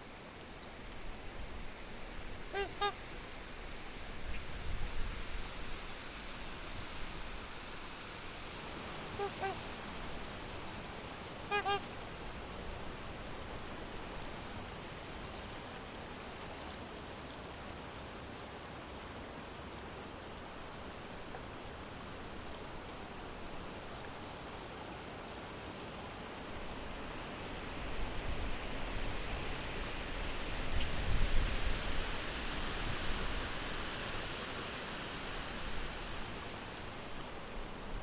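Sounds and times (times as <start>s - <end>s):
steady outdoor hiss: 0.0s - 38.0s
swans honking: 2.5s - 3.1s, 9.0s - 9.7s, 11.4s - 11.9s.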